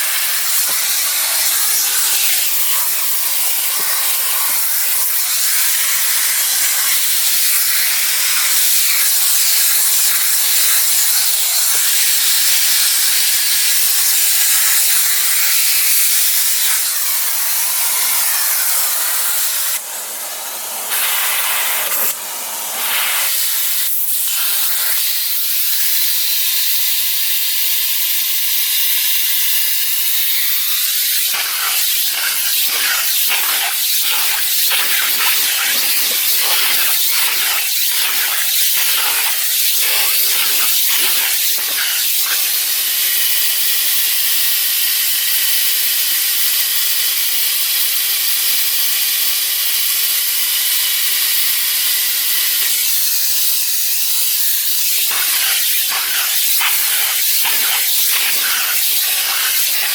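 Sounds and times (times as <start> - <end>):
vacuum cleaner running: 0.0 - 25.2, 30.4 - 43.4, 54.9 - 59.9.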